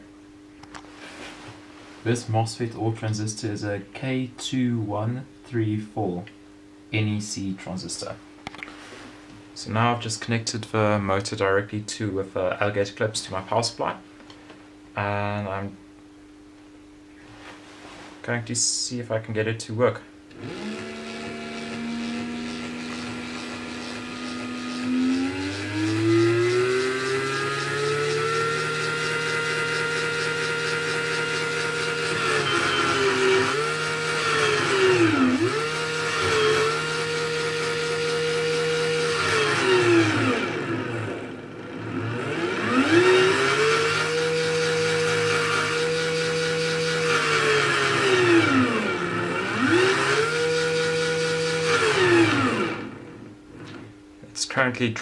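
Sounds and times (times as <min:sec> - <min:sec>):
electric motor whining: 0:20.3 - 0:53.9.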